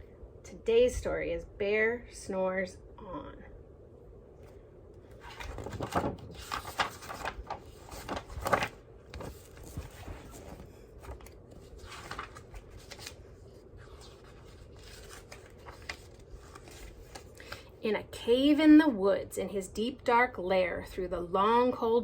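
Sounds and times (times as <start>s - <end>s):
book pages rustling: 5.1s - 17.6s.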